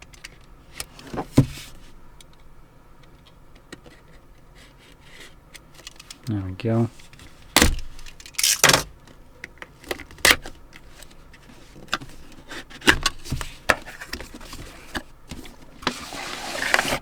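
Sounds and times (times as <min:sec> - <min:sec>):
cardboard box being opened: 0:12.4 - 0:17.0.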